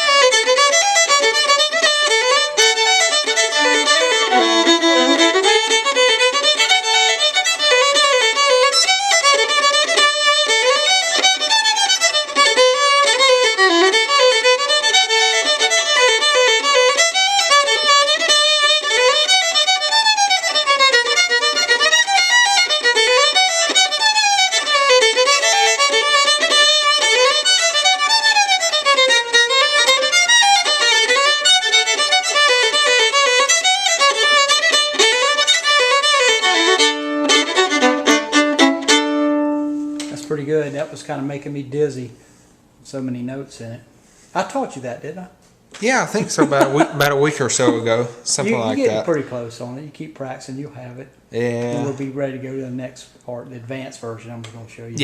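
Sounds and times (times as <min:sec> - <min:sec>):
fiddle playing fast tune: 0:00.0 - 0:40.6.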